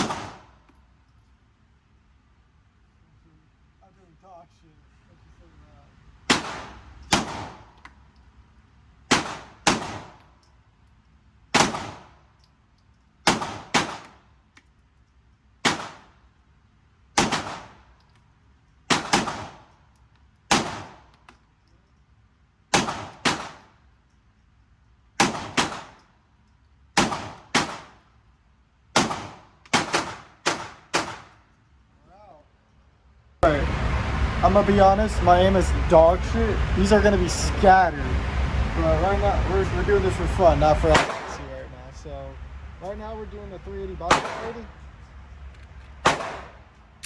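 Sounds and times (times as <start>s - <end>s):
gunshot echo: 0.0s - 0.6s, 6.3s - 7.8s, 9.1s - 10.2s, 11.6s - 12.2s, 13.3s - 14.2s, 15.6s - 16.1s, 17.2s - 17.8s, 18.9s - 19.7s, 20.5s - 21.1s, 22.7s - 23.7s, 25.2s - 26.0s, 27.0s - 28.0s, 29.0s - 31.4s, 40.8s - 41.5s, 44.0s - 44.7s, 46.0s - 46.7s
pistol shots: 0.0s - 0.6s, 6.3s - 7.8s, 9.1s - 10.2s, 11.5s - 12.2s, 13.2s - 14.2s, 15.6s - 16.2s, 17.2s - 17.9s, 18.9s - 19.7s, 20.5s - 21.2s, 22.7s - 23.7s, 25.2s - 26.0s, 27.0s - 28.1s, 29.0s - 31.4s, 40.9s - 41.5s, 44.0s - 44.8s, 46.0s - 46.8s.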